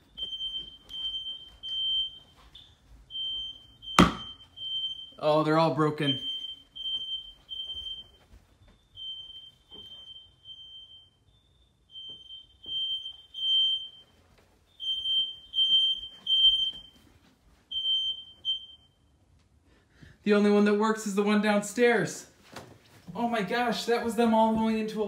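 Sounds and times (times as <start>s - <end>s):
smoke alarm beeping: 0.0s - 19.3s.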